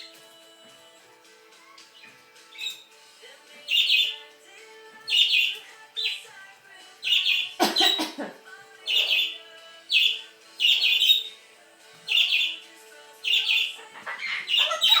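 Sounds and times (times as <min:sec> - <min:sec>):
parrot squawking: 0:02.0 - 0:02.9, 0:03.6 - 0:04.3, 0:05.1 - 0:06.3, 0:07.0 - 0:08.1, 0:08.8 - 0:11.4, 0:12.1 - 0:15.0.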